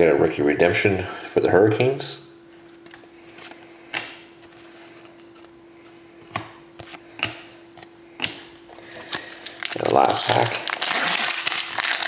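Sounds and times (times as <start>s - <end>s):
faint steady hum: 0.0s - 12.0s.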